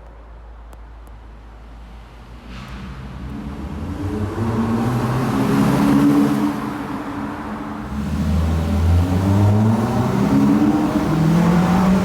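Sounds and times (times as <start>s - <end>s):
car engine starting and revving: 7.8s - 12.0s.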